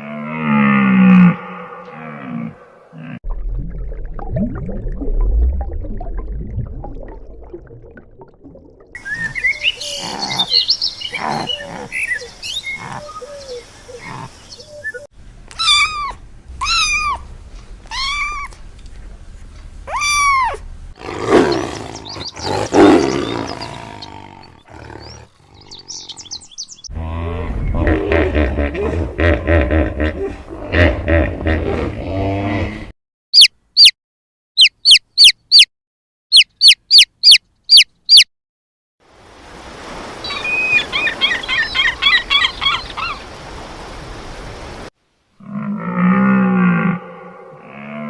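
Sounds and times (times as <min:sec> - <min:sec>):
roar-like calls: 0:00.0 - 0:03.2, 0:21.0 - 0:32.9, 0:45.4 - 0:48.0
animal calls: 0:09.1 - 0:17.2
rising-and-falling calls: 0:34.6 - 0:35.7, 0:36.3 - 0:38.2, 0:40.2 - 0:43.4.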